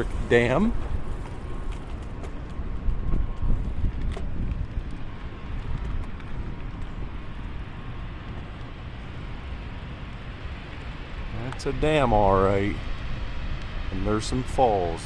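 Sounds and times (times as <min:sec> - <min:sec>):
wind buffeting microphone: 0:00.0 - 0:15.0
steady hiss: 0:06.6 - 0:15.0.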